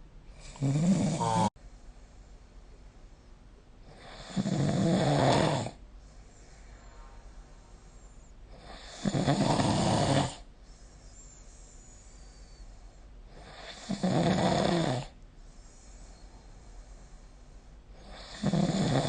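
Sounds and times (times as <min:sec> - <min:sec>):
person snoring: 0:00.4 - 0:01.6, 0:03.9 - 0:05.8, 0:08.6 - 0:10.4, 0:13.4 - 0:15.1, 0:18.0 - 0:19.0.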